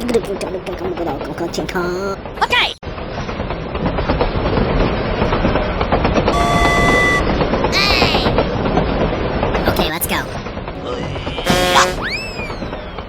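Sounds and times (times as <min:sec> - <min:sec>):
train clattering along rails: 0:02.9 - 0:13.0
train horn: 0:06.3 - 0:07.5, 0:11.4 - 0:12.1.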